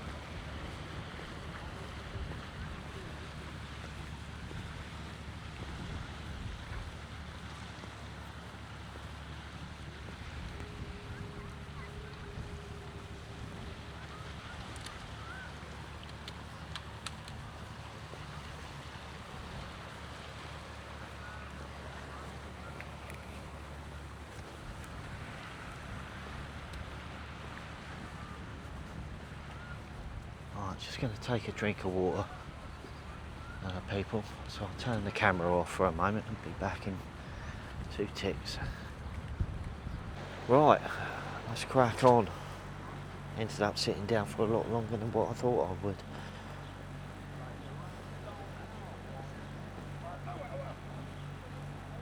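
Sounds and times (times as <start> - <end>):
sea waves: 0.0 - 52.0
wind noise on microphone: 25.0 - 30.5, 37.0 - 40.3.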